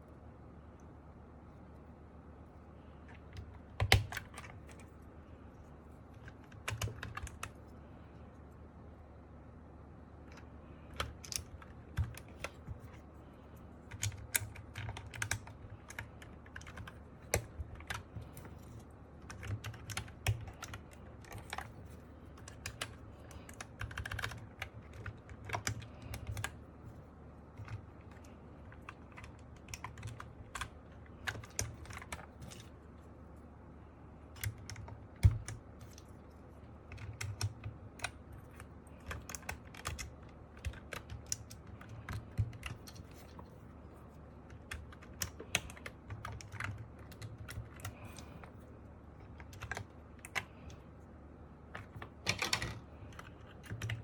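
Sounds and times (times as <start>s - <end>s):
mechanical keyboard clacking: 3.1s - 4.9s, 6.2s - 7.6s, 10.3s - 13.0s, 13.9s - 26.6s, 27.5s - 32.7s, 34.3s - 36.1s, 36.8s - 43.3s, 44.4s - 48.6s, 49.2s - 50.8s, 51.7s - 54.0s.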